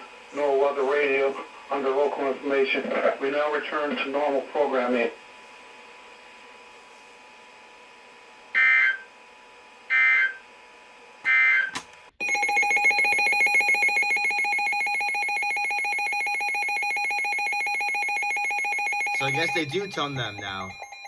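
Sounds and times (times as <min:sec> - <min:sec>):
steady electronic attention tone: 0:12.2 - 0:20.8
screeching digital header bursts: 0:18.6 - 0:20.7.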